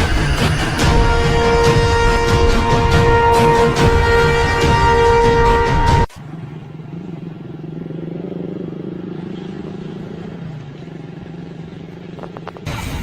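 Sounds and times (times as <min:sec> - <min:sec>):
background music: 0:00.0 - 0:06.1
low engine hum: 0:00.0 - 0:13.0.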